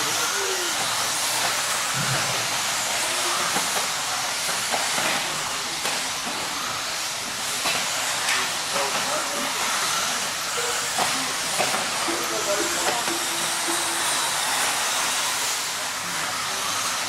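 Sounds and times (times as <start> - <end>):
rc car motors and tyres hissing: 0.0 - 17.0.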